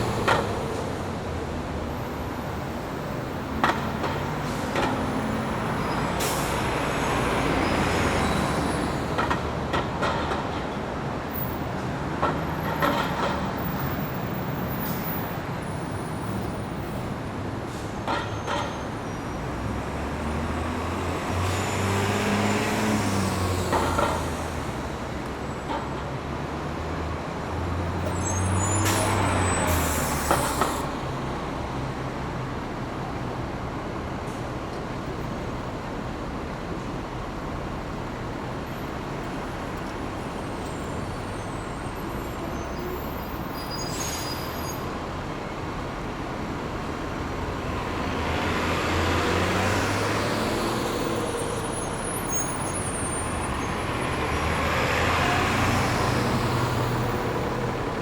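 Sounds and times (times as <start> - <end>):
bus diesel engines idling: 0.0 - 12.8, 26.6 - 58.0
air brakes hissing: 5.8 - 9.0, 28.1 - 31.0, 42.6 - 44.9.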